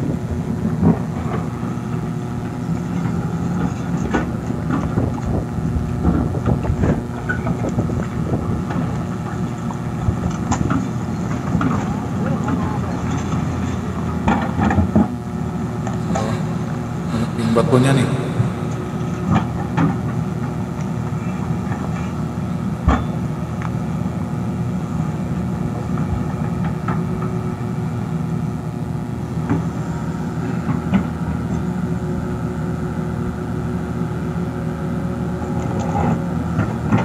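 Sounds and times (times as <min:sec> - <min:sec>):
diesel engine running: 0:00.0 - 0:22.8.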